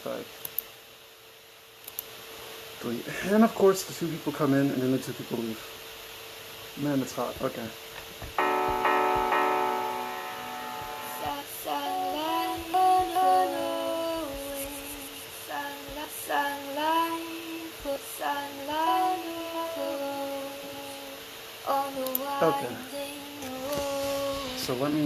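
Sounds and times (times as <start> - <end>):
held synth chord: 8.4 - 14.3
voice-like lead melody: 8.4 - 14.8.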